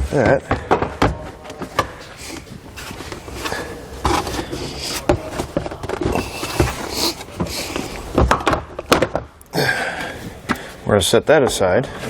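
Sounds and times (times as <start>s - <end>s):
plastic trim scraping: 1.6s - 8.6s.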